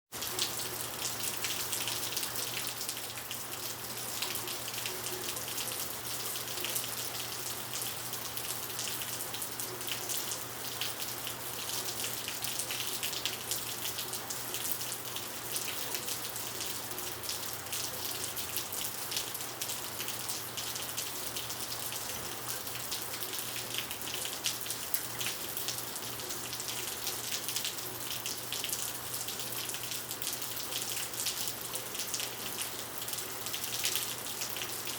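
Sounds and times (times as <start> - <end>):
heavy rain on asphalt: 0.2 - 34.9.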